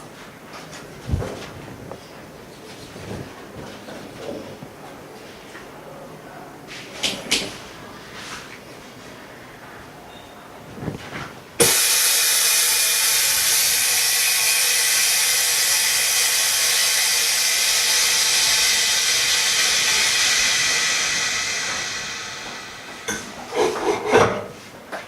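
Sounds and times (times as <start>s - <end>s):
compressed air venting hiss: 11.6s - 23.6s.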